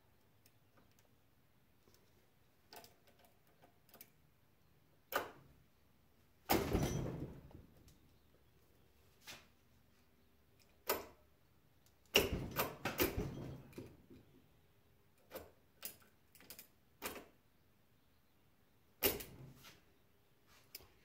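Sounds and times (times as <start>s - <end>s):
metal clicks and knocks: 19.0s - 19.4s.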